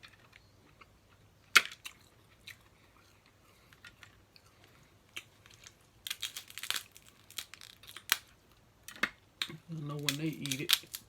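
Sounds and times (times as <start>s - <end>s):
crab shells cracking and snapping: 5.1s - 11.0s.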